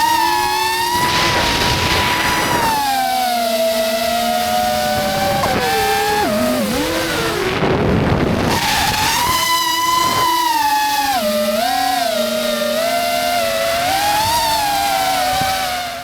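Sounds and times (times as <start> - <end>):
quadcopter motors whining: 0.0 - 16.0.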